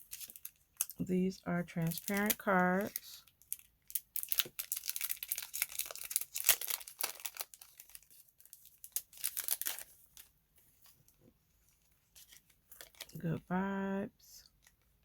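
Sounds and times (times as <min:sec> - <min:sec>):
plastic packaging crinkling: 0:00.0 - 0:01.0, 0:01.7 - 0:10.9, 0:12.1 - 0:13.2.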